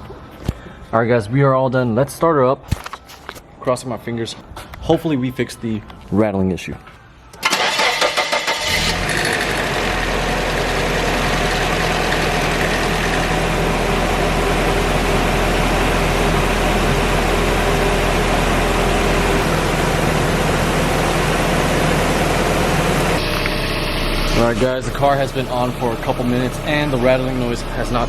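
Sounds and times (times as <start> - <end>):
car engine idling: 7.4 - 28.0.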